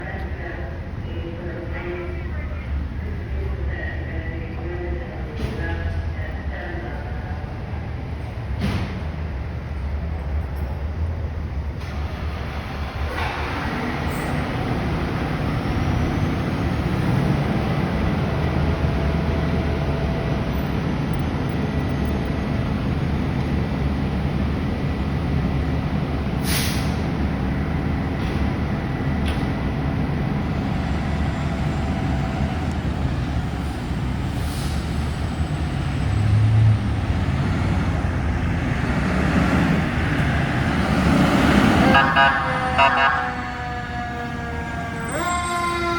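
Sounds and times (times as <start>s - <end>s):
truck engines rumbling: 0.0s - 45.9s
air brake hiss: 26.4s - 27.0s, 34.3s - 35.0s.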